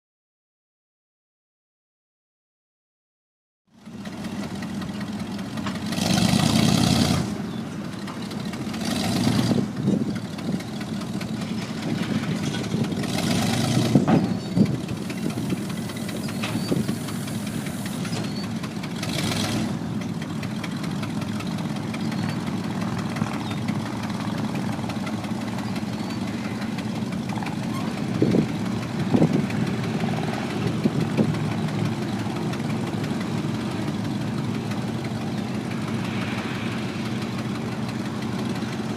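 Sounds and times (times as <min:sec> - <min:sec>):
tractor engine idling: 0:03.7 - 0:38.9
rushes of noise: 0:35.1 - 0:38.9.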